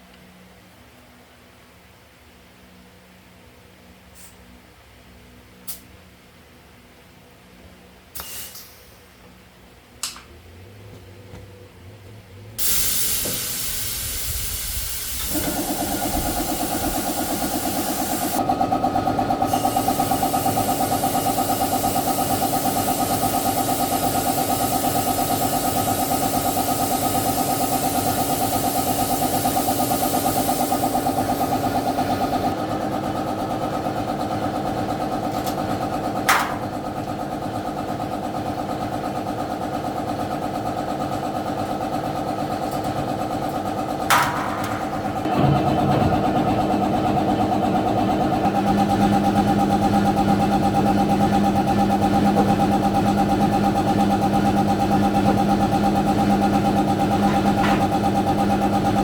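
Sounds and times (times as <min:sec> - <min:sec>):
sharp click: 0:08.2 - 0:08.7
loud hiss: 0:12.6 - 0:18.4, 0:19.5 - 0:32.6
motor running with rapid pulsing: 0:14.0 - 0:32.6.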